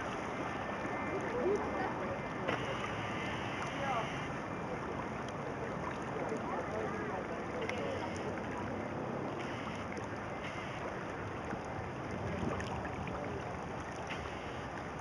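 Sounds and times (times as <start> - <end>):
floodwater rushing: 0.0 - 15.0
faint ticks: 7.6 - 8.3.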